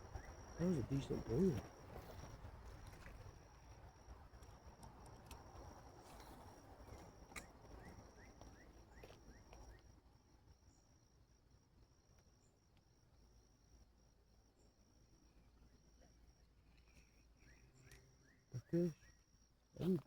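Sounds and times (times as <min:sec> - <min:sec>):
insect trilling: 0:00.6 - 0:01.6.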